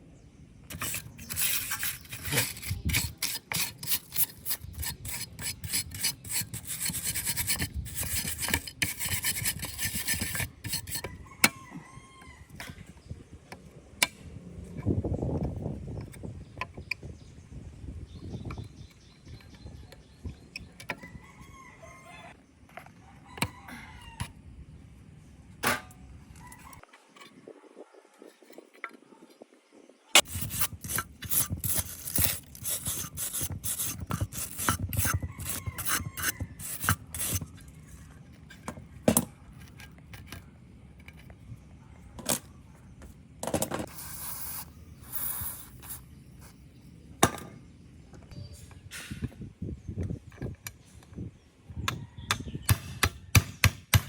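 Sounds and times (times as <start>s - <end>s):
metal tools clinking and scraping: 0.7s - 6.6s.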